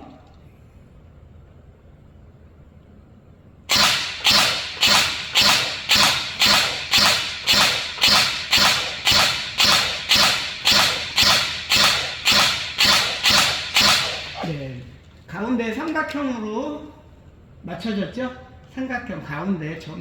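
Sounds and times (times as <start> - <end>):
airsoft rifle single shots: 3.7 - 14.8.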